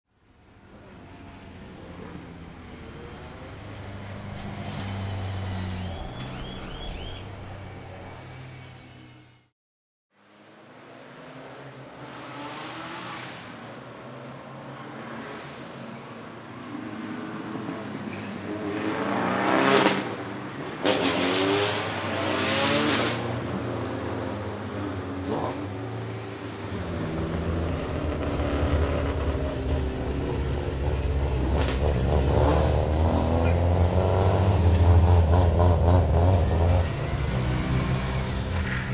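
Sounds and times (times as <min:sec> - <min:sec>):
rally car engine revving: 0:26.7 - 0:38.9.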